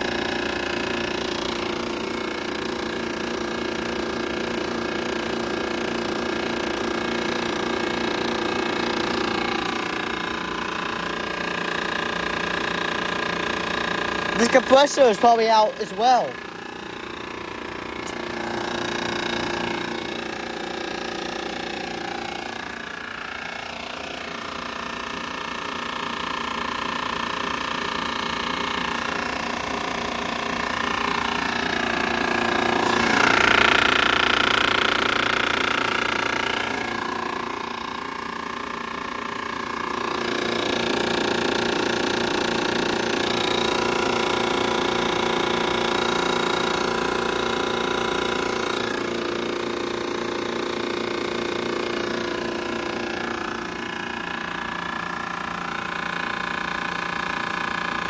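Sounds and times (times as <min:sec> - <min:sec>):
compressor rattling buzz: 0:00.0 - 0:58.0.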